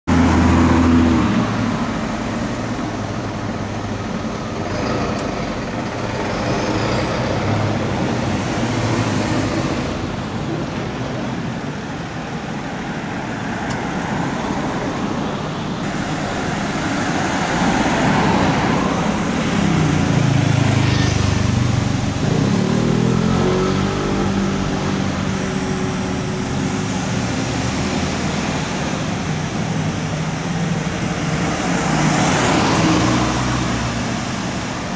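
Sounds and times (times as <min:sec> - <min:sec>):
road traffic hum: 0:00.1 - 0:34.9
engine speeding up: 0:15.8 - 0:34.9.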